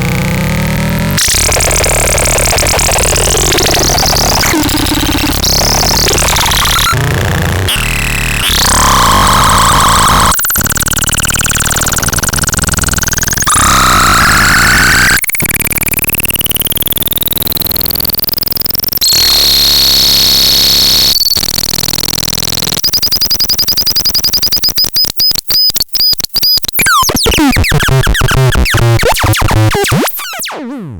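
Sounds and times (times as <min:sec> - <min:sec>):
synthesizer electronic tones: 0:01.1 - 0:07.0, 0:07.6 - 0:16.8, 0:26.0 - 0:30.9.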